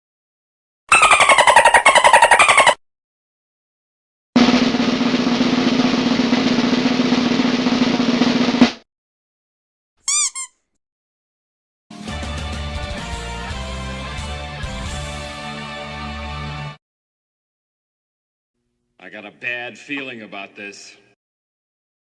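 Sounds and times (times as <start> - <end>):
music: 4.4 - 8.8, 11.9 - 16.8
snare drum roll: 4.4 - 8.8.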